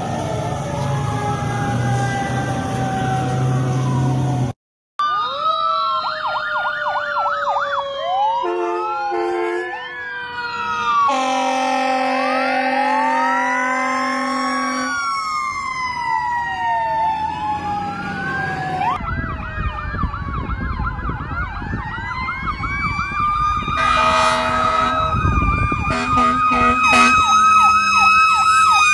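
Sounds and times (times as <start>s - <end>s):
electronic sirens warbling: 0.0s - 28.9s
mechanical siren gliding: 0.0s - 28.9s
air horn blasts: 8.4s - 9.9s, 11.1s - 15.0s, 23.8s - 27.4s.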